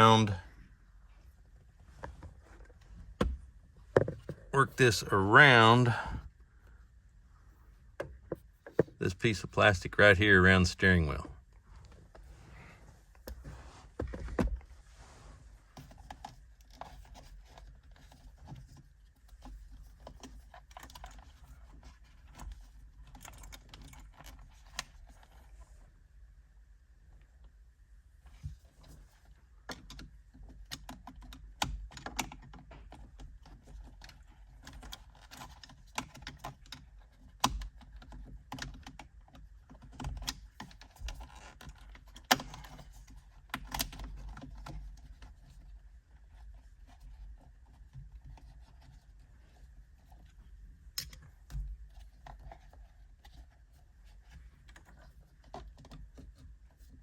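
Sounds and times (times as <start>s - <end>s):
small plastic clicks and rustling: 15.8s - 25.6s, 28.3s - 57.0s.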